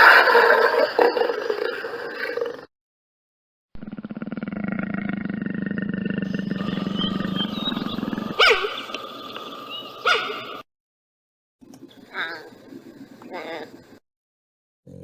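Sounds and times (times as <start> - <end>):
big cat growling: 3.8 - 9.4
big cat wavering call: 6.3 - 10.6.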